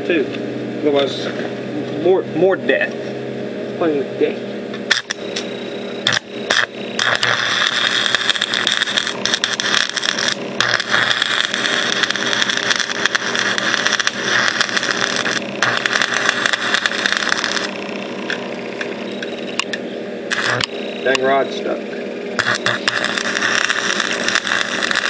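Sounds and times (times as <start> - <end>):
welder humming: 0.0 - 25.0
welding arc crackling: 4.8 - 21.5, 22.3 - 25.0.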